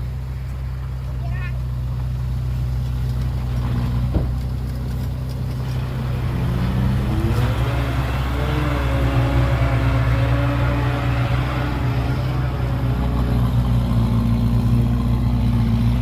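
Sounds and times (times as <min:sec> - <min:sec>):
heavy diesel engine revving: 0:03.4 - 0:16.0.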